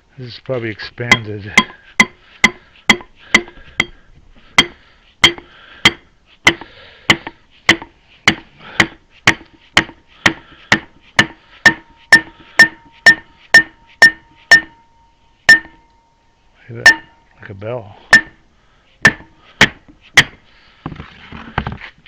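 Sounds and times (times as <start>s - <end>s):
hammer blows on metal: 1.1s - 16.2s, 16.8s - 17.3s, 18.0s - 18.4s, 19.0s - 20.4s
bell-like ringing tone: 11.8s - 17.3s.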